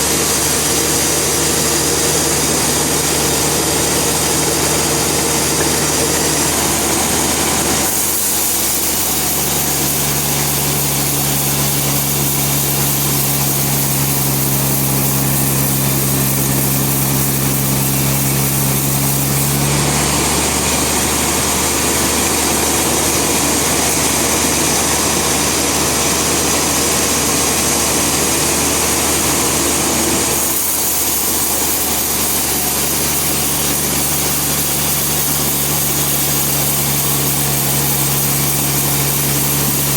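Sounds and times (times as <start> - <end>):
bandsaw sawmill running: 0.0 - 39.9.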